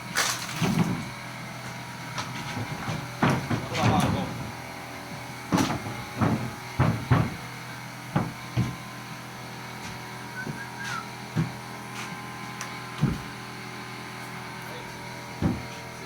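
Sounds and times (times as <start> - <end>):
steady mechanical hum: 0.0 - 16.0
carpentry knocks and thuds: 2.2 - 4.6, 5.4 - 9.1, 9.8 - 10.7, 11.3 - 11.6, 12.9 - 13.4, 15.3 - 15.9.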